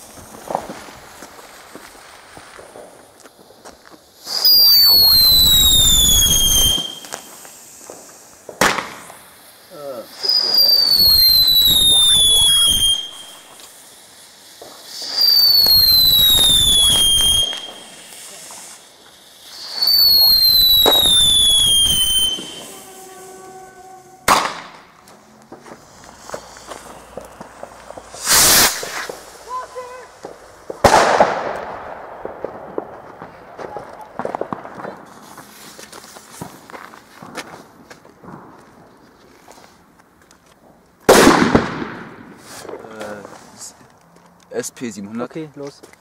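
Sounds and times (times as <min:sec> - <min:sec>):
firework bang: 0:00.0 - 0:03.0, 0:04.2 - 0:09.3, 0:14.6 - 0:38.9, 0:41.1 - 0:43.4
firework whistling: 0:00.0 - 0:43.8
firework whistle falling in pitch: 0:04.3 - 0:07.4, 0:10.2 - 0:13.7, 0:15.0 - 0:18.0, 0:19.6 - 0:29.6
rushing noise: 0:15.2 - 0:30.2.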